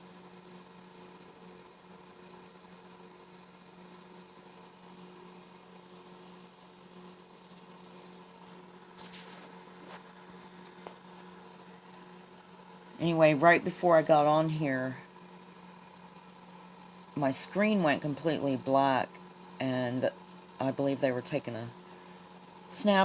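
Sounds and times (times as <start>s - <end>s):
low electrical hum with hiss: 0.0s - 23.0s.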